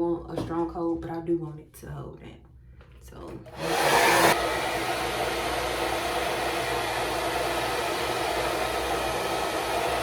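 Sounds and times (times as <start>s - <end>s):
hair dryer blowing: 3.5s - 10.0s.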